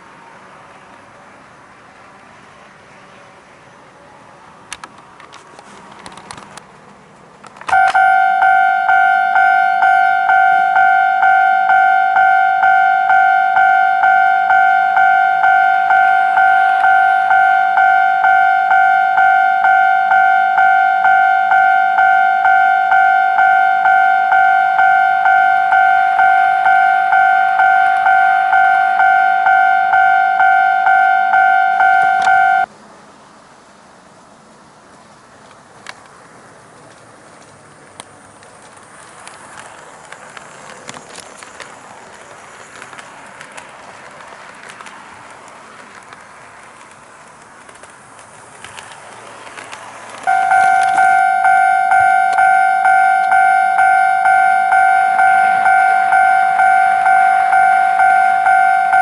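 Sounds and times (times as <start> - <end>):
electronic crossing bell ringing: 7.7 - 32.7, 50.2 - 59.0.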